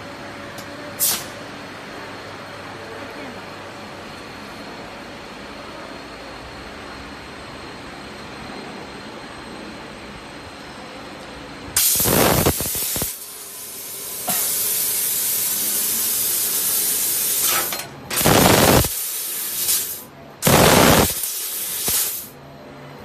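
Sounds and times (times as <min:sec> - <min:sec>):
laser cutting machine humming: 0:00.1 - 0:22.6
gas jet hissing: 0:11.8 - 0:22.3.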